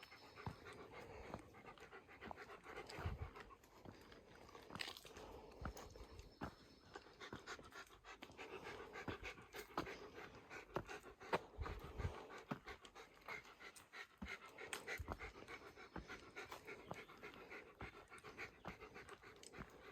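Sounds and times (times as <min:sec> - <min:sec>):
person panting hard: 0:00.0 - 0:19.9
footsteps on pavement: 0:02.2 - 0:10.1.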